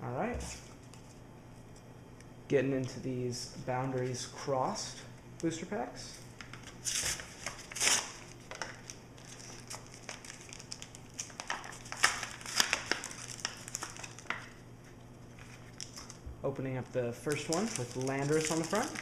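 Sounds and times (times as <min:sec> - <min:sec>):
foil wrappers crinkling: 0:06.7 - 0:16.2, 0:16.8 - 0:19.0.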